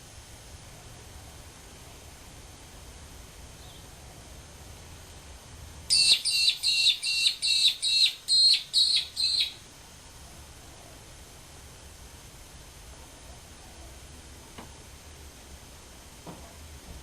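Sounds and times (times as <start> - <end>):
bird calling high sharp notes: 5.9 - 9.6.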